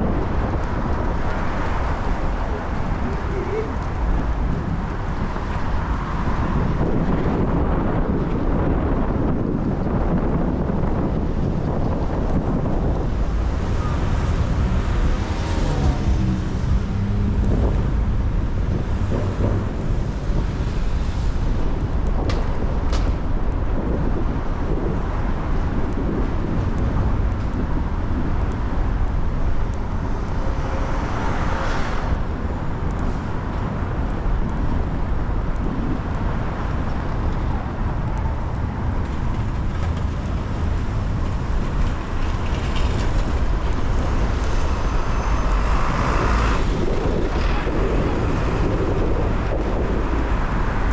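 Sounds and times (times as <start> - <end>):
traffic on wet roads: 0.0 - 50.9
vehicle swishing past: 13.4 - 19.7.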